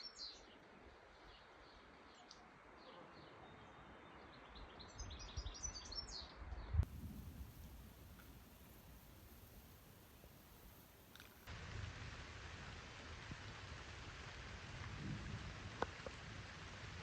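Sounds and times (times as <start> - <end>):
steady outdoor hiss: 0.0 - 17.0
low rumbles: 11.4 - 17.0.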